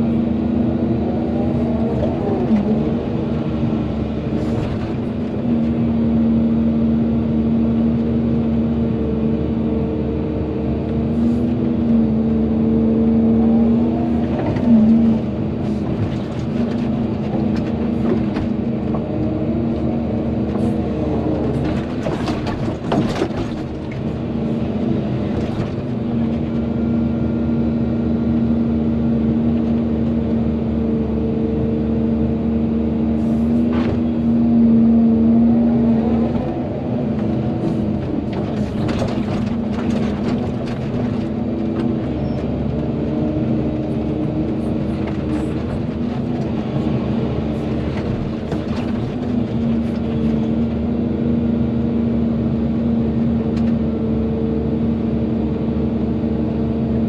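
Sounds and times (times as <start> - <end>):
excavator diesel engine running: 0.0 - 57.0
knocks and clatter: 21.3 - 24.2, 36.2 - 50.6.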